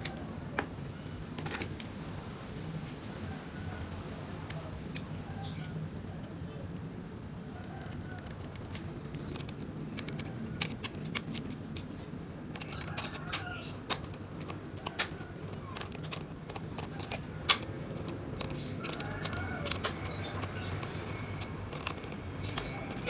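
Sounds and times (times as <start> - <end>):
laptop parts and screws clicking: 7.5 - 23.0.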